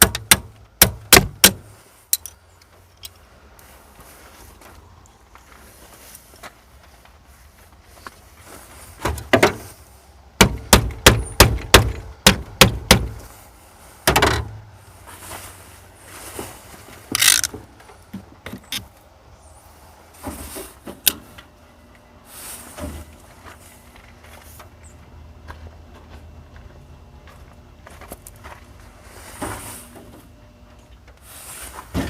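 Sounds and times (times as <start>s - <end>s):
sharp knocks on metal: 0.0s - 1.7s, 10.4s - 13.2s
metal scraping: 16.2s - 17.6s.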